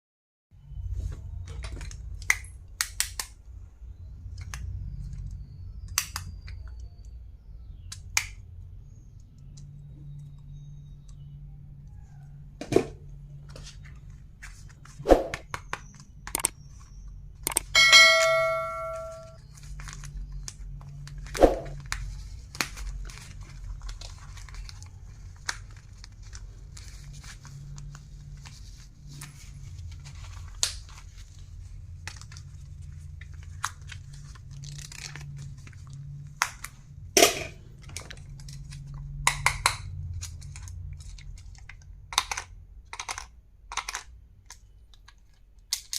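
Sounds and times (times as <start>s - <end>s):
stationery clicks and taps: 15.6s - 16.6s, 17.4s - 19.4s
bell-like ding: 17.8s - 19.4s.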